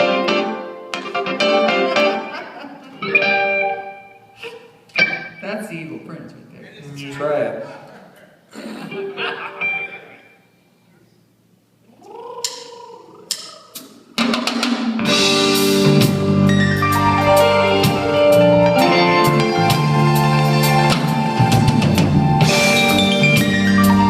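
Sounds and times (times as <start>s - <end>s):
rock band playing loud: 0.0s - 2.4s, 3.0s - 4.2s, 14.2s - 24.0s.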